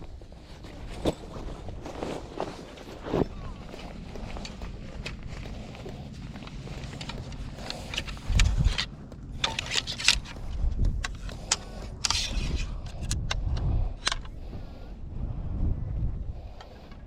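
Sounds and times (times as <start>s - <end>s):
gear clicking and clinking: 2.8s - 14.5s
low thumps and rumble: 2.9s - 17.0s.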